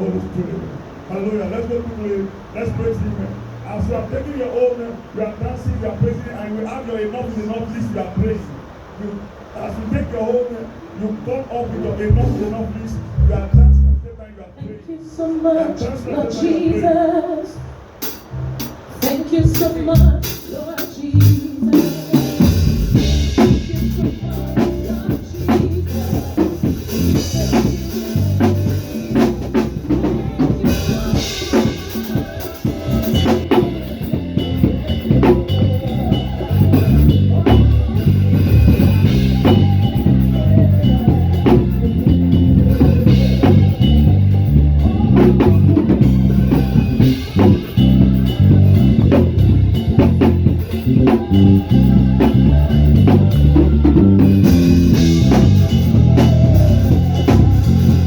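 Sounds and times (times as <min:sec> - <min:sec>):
electric bass guitar: 0:12.1 - 0:14.1, 0:18.2 - 0:20.4, 0:21.1 - 0:58.0
guitar: 0:15.5 - 0:58.0
drum kit steady beat: 0:18.0 - 0:58.0.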